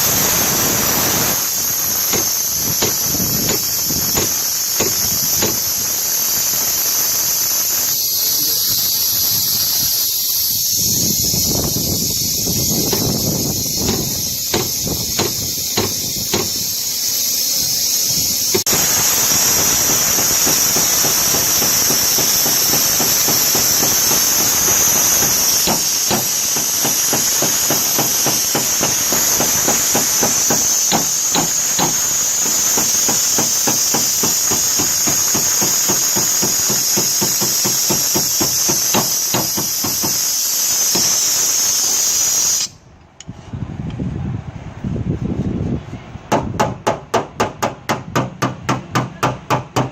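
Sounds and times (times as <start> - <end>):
steady high hiss: 0.0 - 43.0
hammer blows on sheet metal: 0.1 - 5.8, 12.5 - 16.8, 18.5 - 41.4, 46.3 - 49.9.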